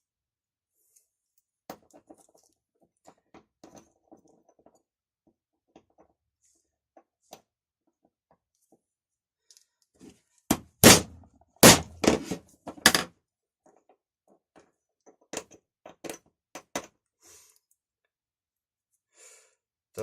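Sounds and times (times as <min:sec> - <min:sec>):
hammer striking a punch: 0:10.5 - 0:12.2.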